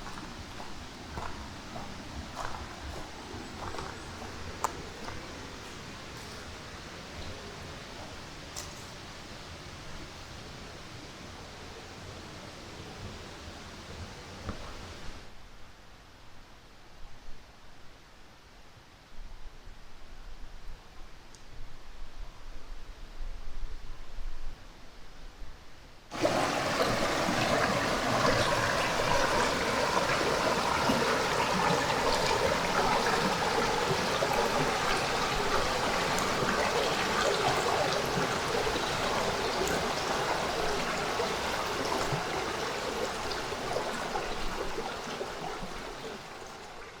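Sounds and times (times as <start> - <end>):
stream water rushing: 0.0 - 15.2, 26.1 - 47.0.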